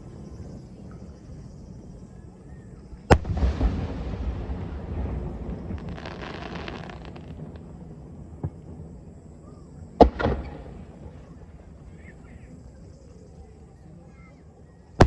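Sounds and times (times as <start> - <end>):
fireworks crackles: 3.1 - 9.0
rumbling boom: 3.1 - 12.6.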